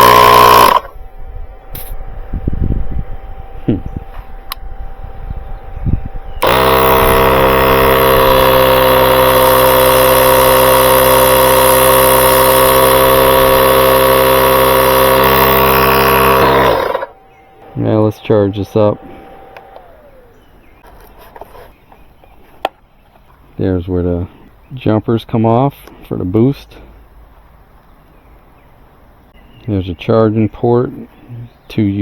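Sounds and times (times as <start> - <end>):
air compressor humming: 0.0 - 21.0.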